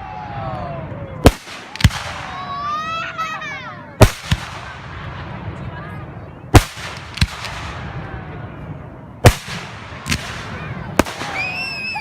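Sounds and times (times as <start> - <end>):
fireworks bangs: 1.2 - 3.0, 4.0 - 5.6, 6.5 - 8.4, 9.2 - 12.0
rising firework whistle: 11.0 - 12.0.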